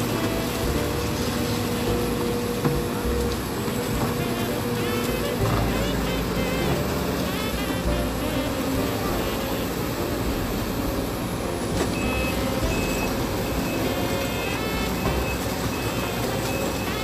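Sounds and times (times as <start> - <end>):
excavator diesel engine running: 0.0 - 17.0
travel alarm beeping: 11.9 - 17.0.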